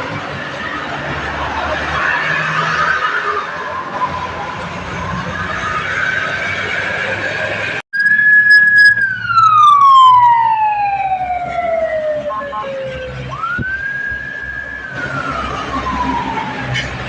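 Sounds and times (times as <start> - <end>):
bus musical horn sliding: 11.4 - 13.4, 16.6 - 17.0.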